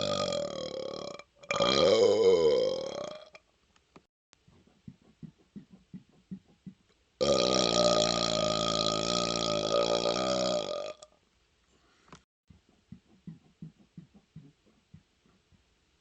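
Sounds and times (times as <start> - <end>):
man burping: 0.0 - 3.3, 7.2 - 11.1.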